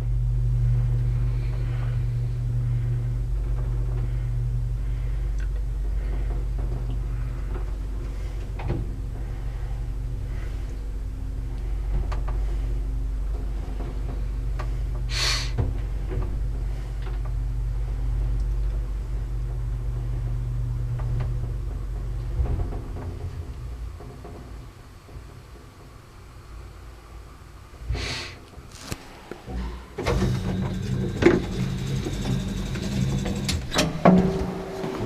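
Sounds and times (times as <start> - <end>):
lift humming: 0.0 - 35.0
short hiss: 15.1 - 15.6, 27.9 - 29.3.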